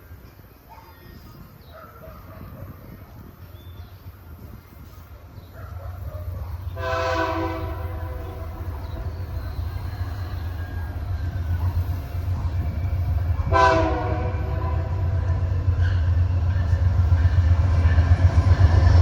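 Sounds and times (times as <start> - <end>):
locomotive engine rumble: 2.6 - 19.0
locomotive air horn blasts: 6.8 - 8.8, 13.5 - 15.2.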